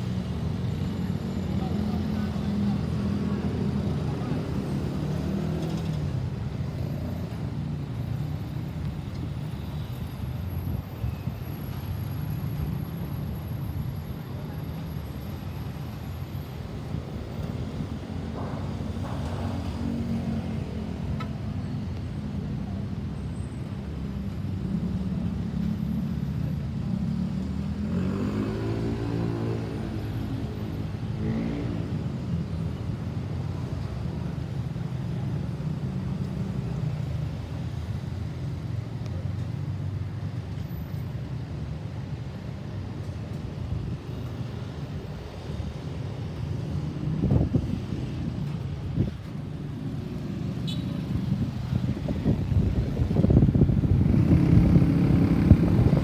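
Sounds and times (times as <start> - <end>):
road traffic: 0.0 - 56.0
vehicle passing close by: 51.2 - 56.0.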